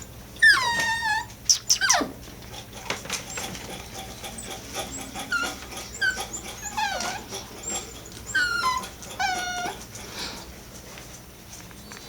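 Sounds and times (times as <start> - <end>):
puppies whimpering: 0.4 - 2.2, 3.4 - 10.4
puppy high squeak: 0.4 - 2.2, 5.3 - 7.3, 8.3 - 9.8.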